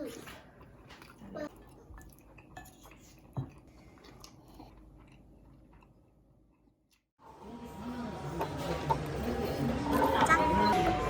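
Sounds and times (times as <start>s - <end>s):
person chewing food: 0.3s - 7.1s.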